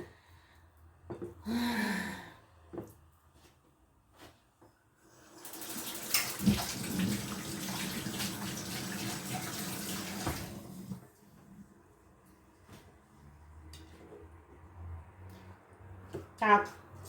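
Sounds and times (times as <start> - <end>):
tap running into sink: 5.4 - 11.0.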